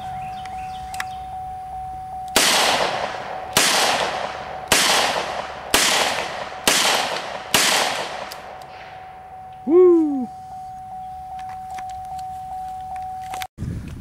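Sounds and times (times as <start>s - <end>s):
handgun shots: 2.4s - 8.8s.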